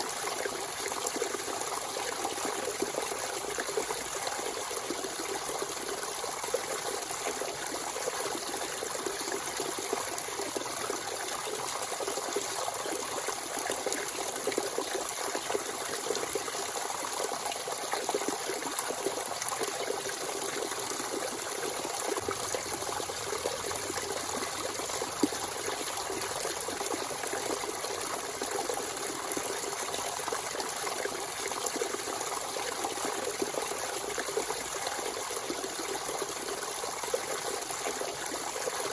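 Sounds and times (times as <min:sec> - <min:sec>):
spring water trickling: 0:20.2 - 0:32.6.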